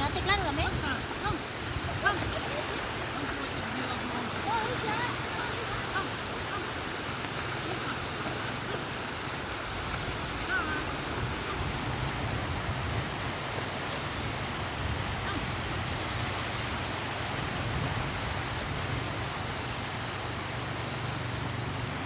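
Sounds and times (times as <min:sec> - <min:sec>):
ocean surf washing: 0:00.0 - 0:22.0.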